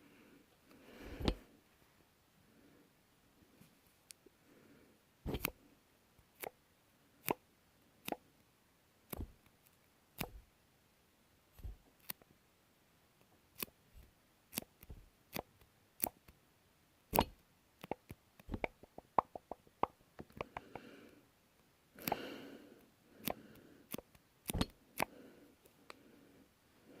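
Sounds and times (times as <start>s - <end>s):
sticky peeling pops: 5.3s - 5.6s, 17.1s - 20.0s, 23.2s - 25.1s.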